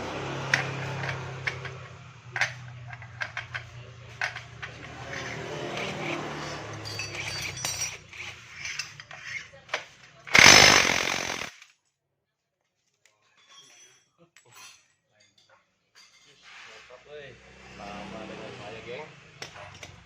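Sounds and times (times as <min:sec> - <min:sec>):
metal tools clinking on parts: 0:00.5 - 0:09.4, 0:13.4 - 0:16.4
loud burst of noise: 0:10.3 - 0:11.5.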